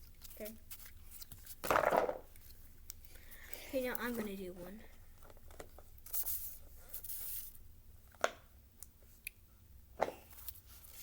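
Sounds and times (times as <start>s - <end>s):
rustle of handled objects: 10.3s - 11.0s.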